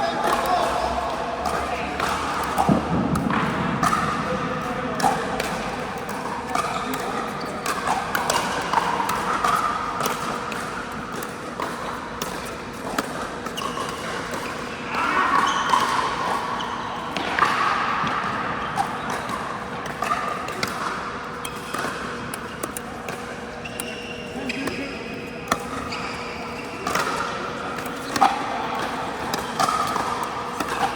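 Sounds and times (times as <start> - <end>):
hum of large hall: 0.0 - 30.9
ball bouncing: 0.2 - 14.5.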